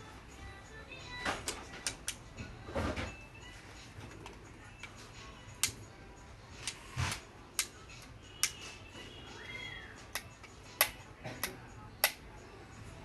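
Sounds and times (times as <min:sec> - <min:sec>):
torch clicking and tapping: 0:10.1 - 0:12.2.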